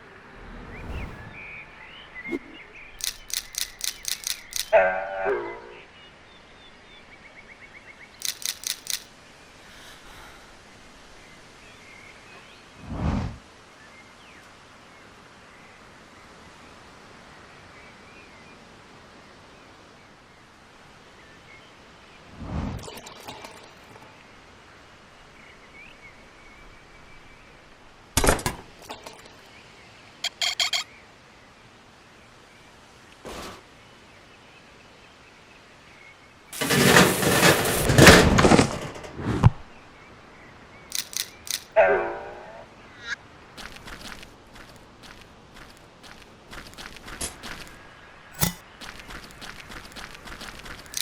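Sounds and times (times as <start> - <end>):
sharp mechanical clicks: 3.0 - 4.8, 8.2 - 9.1, 40.9 - 41.8, 48.4 - 51.0
short metallic clinks: 3.0 - 4.8, 8.2 - 9.1, 30.2 - 30.8, 40.9 - 41.8.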